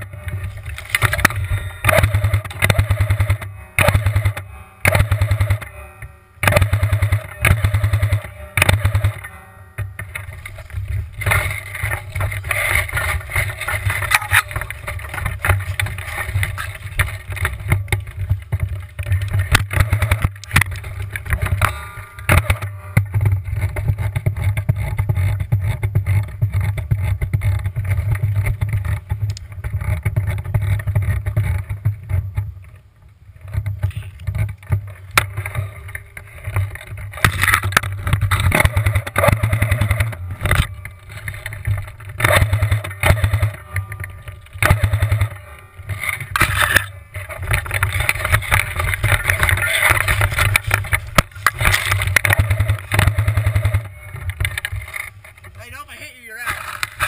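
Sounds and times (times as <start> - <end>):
scattered clicks: 0.0 - 32.8, 33.4 - 57.0
rough mechanical noise: 0.0 - 57.0
airsoft gun firing bursts: 1.8 - 5.7, 6.4 - 9.3.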